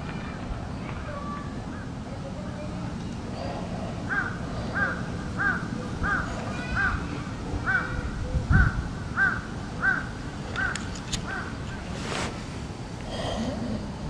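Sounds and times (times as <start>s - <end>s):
crow cawing: 4.1s - 7.0s, 8.6s - 11.6s.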